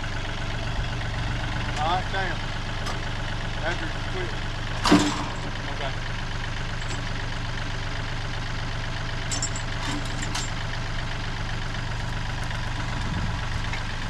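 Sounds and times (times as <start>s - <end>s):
engine idling: 0.0s - 14.0s
metallic clanks: 4.8s - 5.6s, 9.3s - 10.6s.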